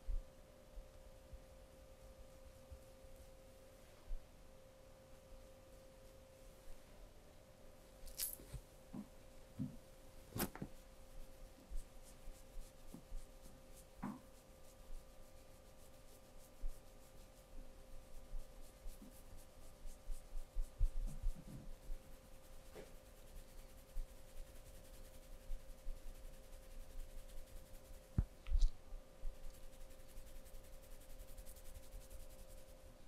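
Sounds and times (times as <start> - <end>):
steady low hum: 0.0 - 33.0
hands scratching skin and hair: 8.0 - 8.7, 10.2 - 32.8.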